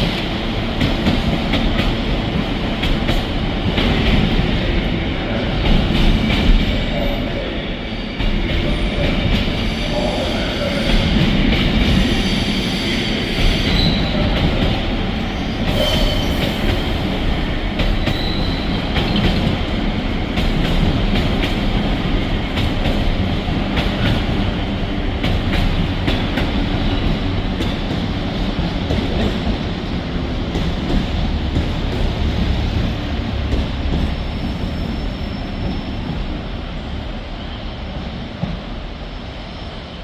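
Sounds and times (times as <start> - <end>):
train wheel clatter and clicks: 0.0 - 4.5, 17.8 - 24.6, 25.2 - 29.6
high wheel squeal: 12.2 - 14.2, 15.4 - 16.6, 18.0 - 18.8, 34.1 - 36.1.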